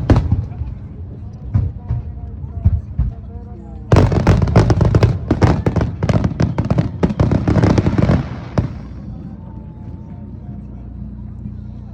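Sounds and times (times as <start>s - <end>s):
fireworks bangs and crackles: 0.0s - 3.3s, 3.9s - 9.3s.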